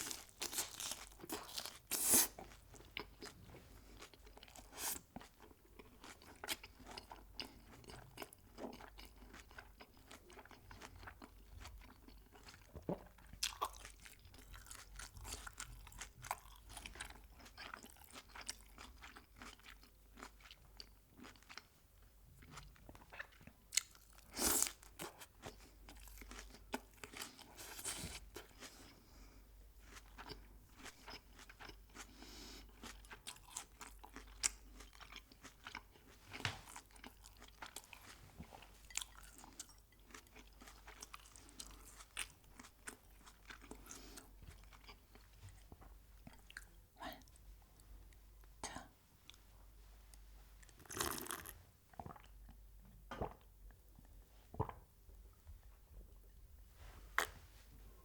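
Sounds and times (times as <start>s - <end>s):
crunchy bites and chewing: 0.0s - 3.3s.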